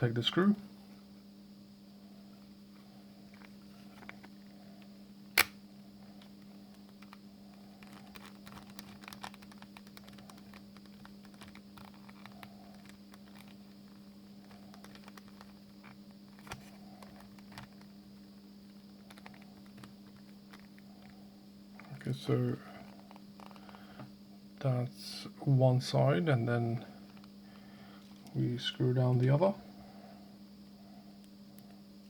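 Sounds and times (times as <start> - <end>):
steady low hum: 0.0 - 32.0
sharp loud click: 5.4 - 5.6.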